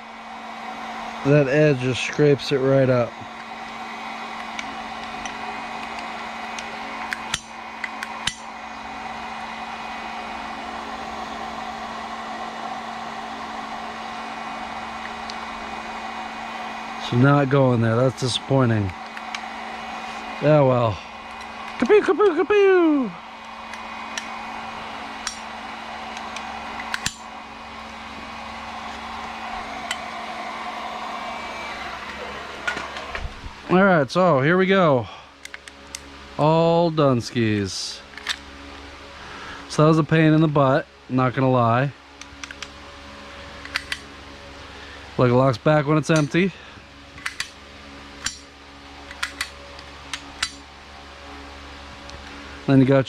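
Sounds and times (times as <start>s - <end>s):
fan whirring: 0.0s - 53.0s
steady background hum: 0.0s - 53.0s
pistol handling clicks and knocks: 26.9s - 27.2s, 38.1s - 38.5s, 43.6s - 44.1s, 47.2s - 47.6s, 48.2s - 50.7s.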